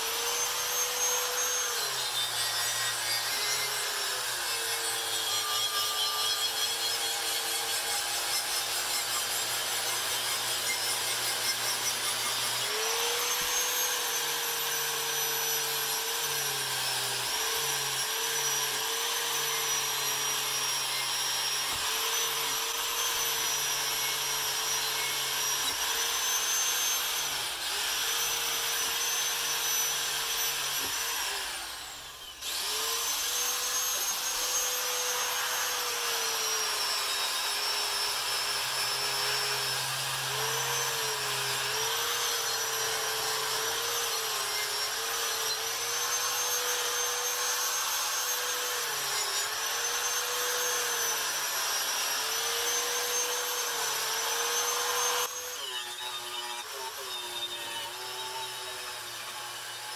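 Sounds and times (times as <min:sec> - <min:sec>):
small power tool whining: 0:00.0 - 0:59.9.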